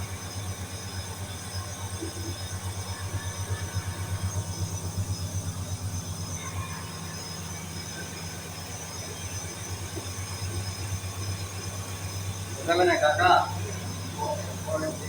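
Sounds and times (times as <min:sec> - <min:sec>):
air conditioner humming: 0:09.3 - 0:15.0.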